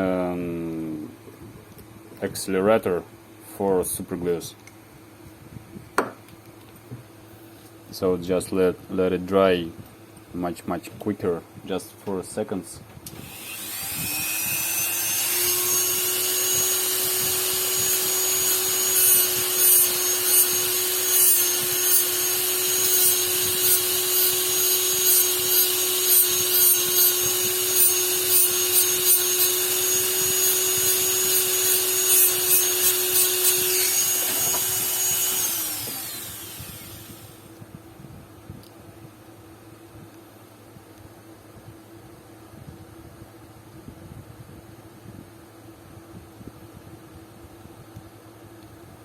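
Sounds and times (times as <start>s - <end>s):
electric power tool spinning: 13.1s - 37.6s.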